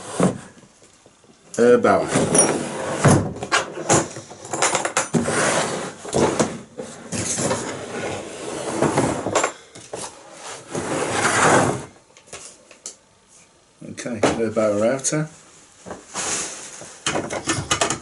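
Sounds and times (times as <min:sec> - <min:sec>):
knocks and clicks of handling: 0:17.1 - 0:18.0.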